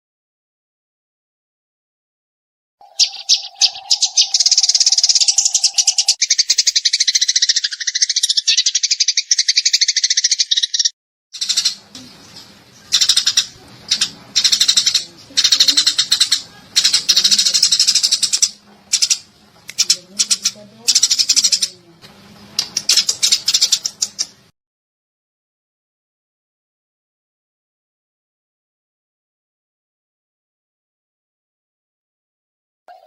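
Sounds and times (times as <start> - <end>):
sparrows chirping: 2.8 - 21.9, 22.6 - 24.5.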